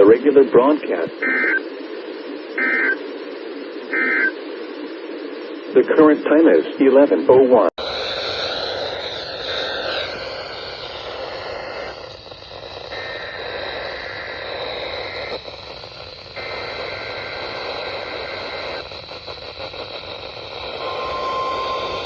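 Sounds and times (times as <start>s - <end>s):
radio static hiss: 0.0s - 22.0s
faint whistles shifting pitch: 20.5s - 22.0s.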